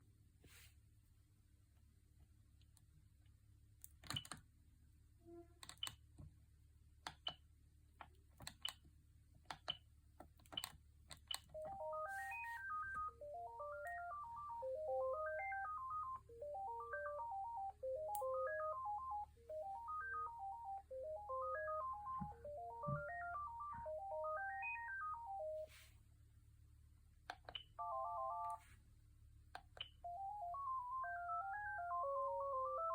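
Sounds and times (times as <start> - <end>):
melodic phone ringtone: 11.6 - 25.8, 27.8 - 28.7, 30.0 - 32.9.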